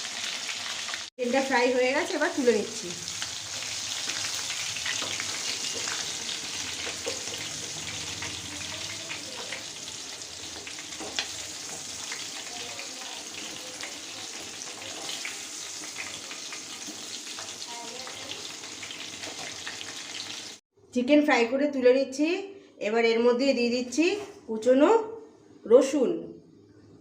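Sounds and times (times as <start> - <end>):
chicken sizzling in hot oil: 0.0 - 20.6.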